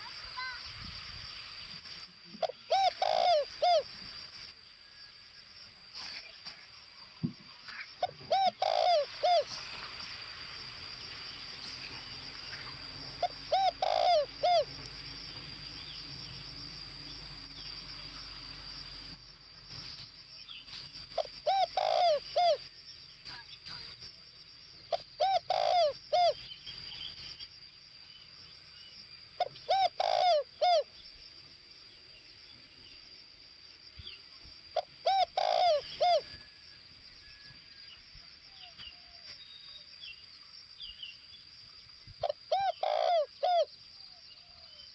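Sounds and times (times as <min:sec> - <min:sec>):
dove cooing: 0:02.4 - 0:03.9, 0:08.0 - 0:09.6, 0:13.2 - 0:14.8, 0:21.2 - 0:22.6, 0:24.9 - 0:26.4, 0:29.4 - 0:30.9, 0:34.8 - 0:36.6, 0:42.2 - 0:43.7.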